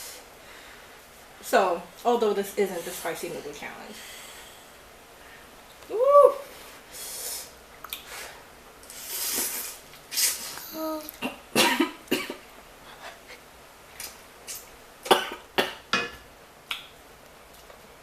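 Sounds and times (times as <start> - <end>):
woman coughing: 11.2 - 12.4, 15.1 - 15.8.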